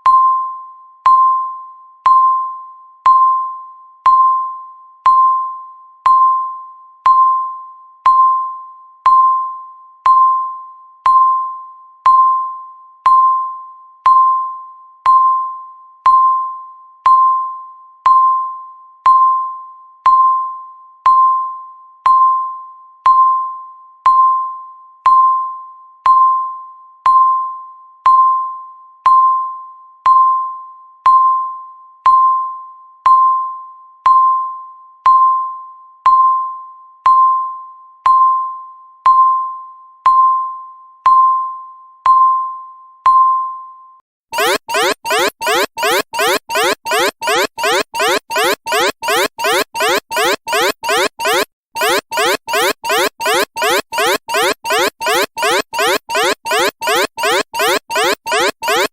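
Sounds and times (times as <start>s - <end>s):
electronic timer ding: 44.4s - 58.9s.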